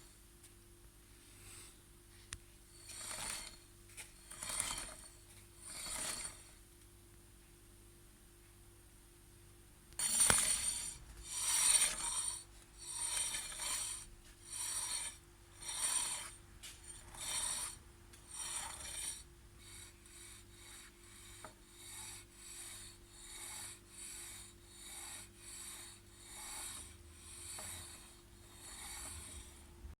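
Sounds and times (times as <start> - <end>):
wheel scraping rub: 2.8 - 6.6, 10.0 - 29.8.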